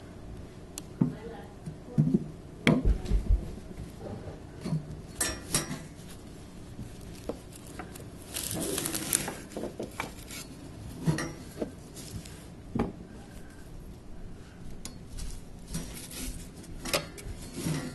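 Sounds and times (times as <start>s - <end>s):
brush scraping coils: 5.8s - 12.4s.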